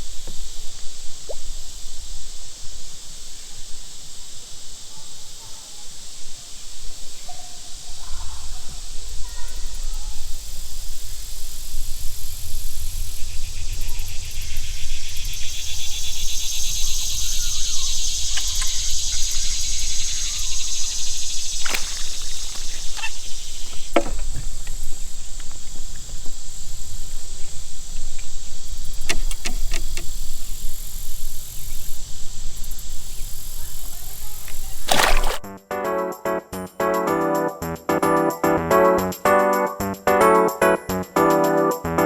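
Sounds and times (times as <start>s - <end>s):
insects buzzing: 0.0s - 39.8s
sharp clicks and knocks: 23.7s - 24.8s.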